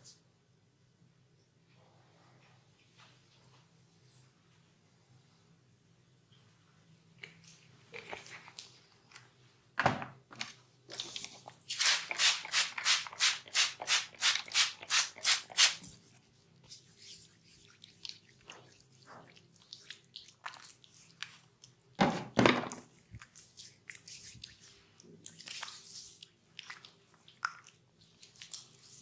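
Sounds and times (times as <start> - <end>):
hands massaging a body: 23.1 - 29.0.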